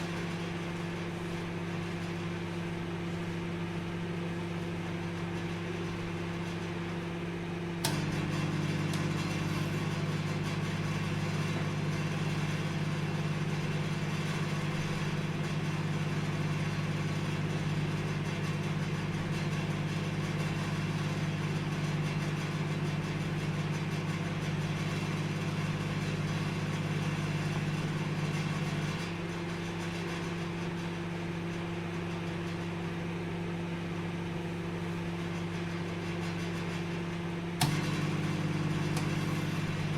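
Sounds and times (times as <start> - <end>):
microwave oven humming: 0.0 - 39.9
microwave click: 7.8 - 11.9, 37.6 - 39.9.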